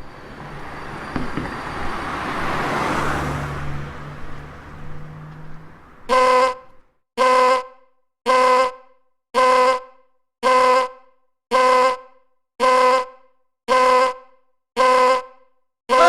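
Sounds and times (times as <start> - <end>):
vehicle passing by: 0.0 - 6.1
vehicle horn honks: 6.1 - 7.7, 12.6 - 16.0.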